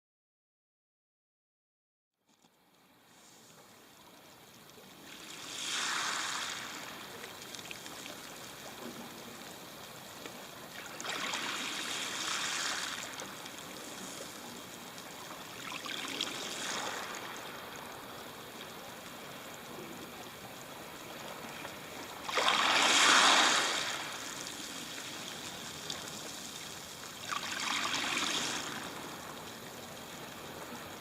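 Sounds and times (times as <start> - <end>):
waves on pebble beach: 5.0 - 8.6, 10.7 - 18.1, 22.1 - 29.4.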